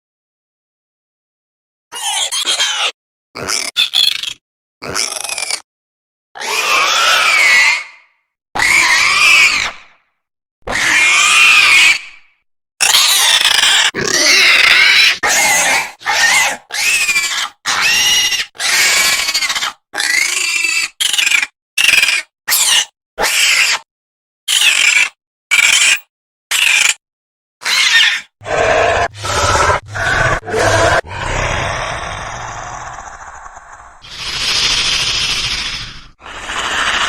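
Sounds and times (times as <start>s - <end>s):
dinosaur calls: 27.6s - 37.0s.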